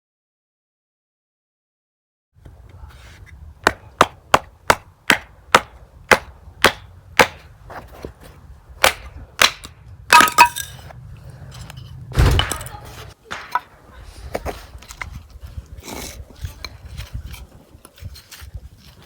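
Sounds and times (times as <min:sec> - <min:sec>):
sharp knocks: 0:03.6 - 0:07.5, 0:08.8 - 0:10.4.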